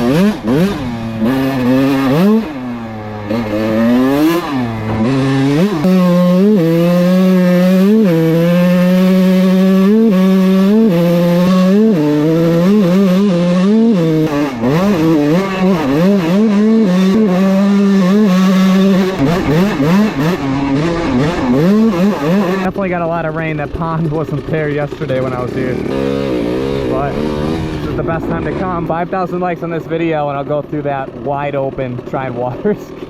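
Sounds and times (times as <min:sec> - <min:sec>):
dirt bike engine revving: 0:00.0 - 0:33.0.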